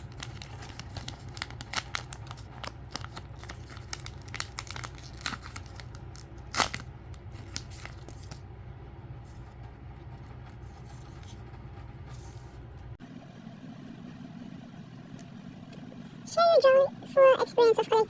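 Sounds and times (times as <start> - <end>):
packaging crinkling and tearing: 0.0 - 8.4.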